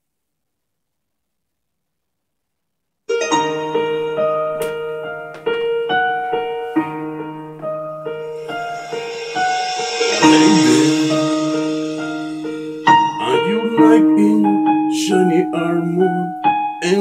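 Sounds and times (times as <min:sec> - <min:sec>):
piano backing track: 0:03.1 - 0:17.0
held bass note: 0:08.2 - 0:13.8.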